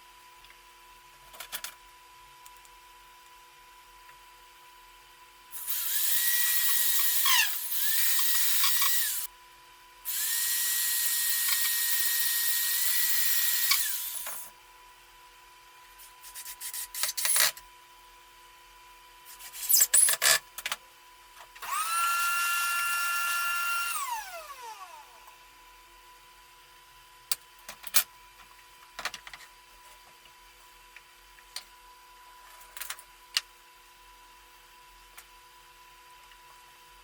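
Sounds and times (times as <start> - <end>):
electric drill motor whine: 5.6 - 9.3, 10.1 - 14.5, 21.6 - 25.3.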